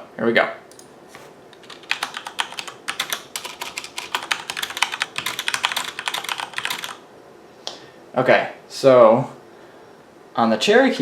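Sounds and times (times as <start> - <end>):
fast mechanical keyboard typing: 1.2 - 7.0.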